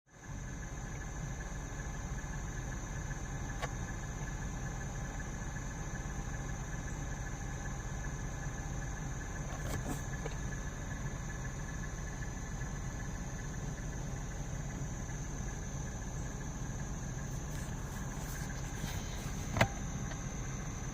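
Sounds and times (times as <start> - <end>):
car engine idling with misfire: 0.1 - 20.9.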